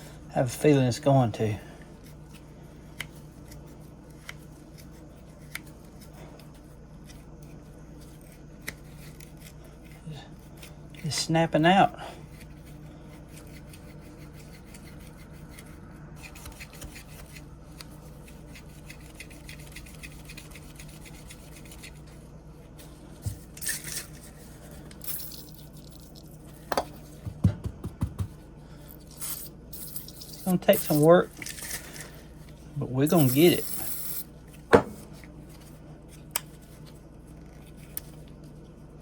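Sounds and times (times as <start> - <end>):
steady low hum: 0.0 - 39.0
pocket knife scraping: 12.3 - 22.2.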